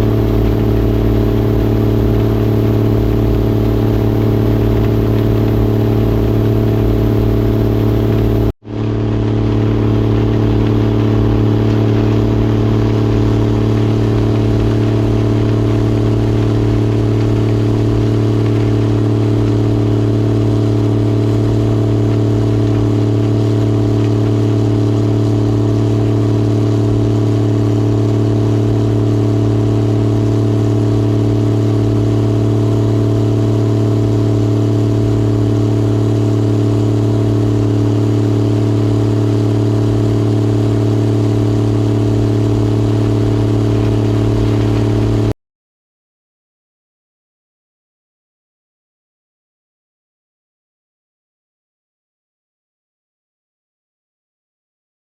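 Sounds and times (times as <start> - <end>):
machinery engine humming: 0.0 - 30.9, 33.2 - 45.3.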